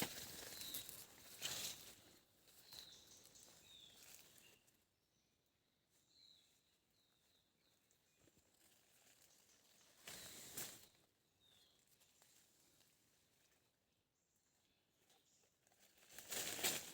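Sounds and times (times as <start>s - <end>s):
small bird chirping: 2.5s - 5.3s
brief rustle: 16.1s - 16.9s.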